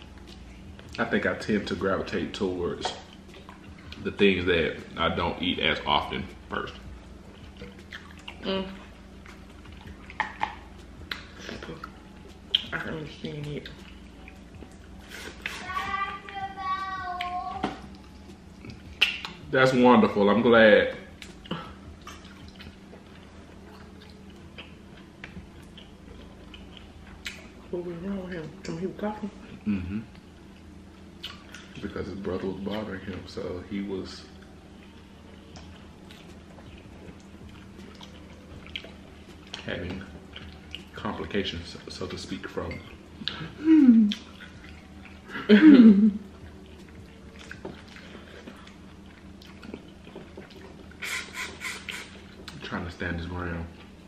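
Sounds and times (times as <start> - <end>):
steady low hum: 0.0 - 54.0
chewing: 2.8 - 4.0, 6.2 - 12.8, 13.4 - 15.9, 17.2 - 19.4, 21.0 - 27.6, 29.6 - 31.9, 34.2 - 45.4, 46.2 - 52.7.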